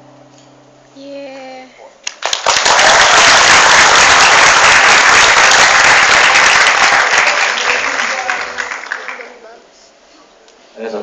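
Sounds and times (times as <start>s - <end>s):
audience applauding: 2.0s - 9.4s.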